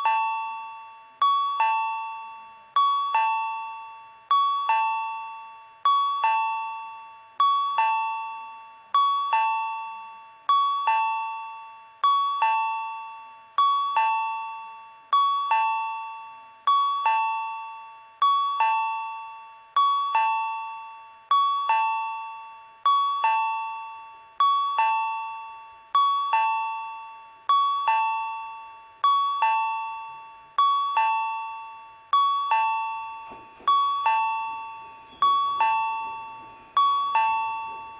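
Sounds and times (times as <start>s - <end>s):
electronic two-note chime: 33.2s - 37.9s.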